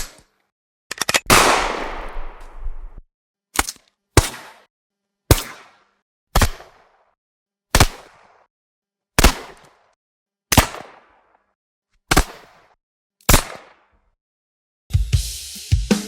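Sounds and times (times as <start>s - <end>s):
pistol shots with echo: 1.3s - 2.4s.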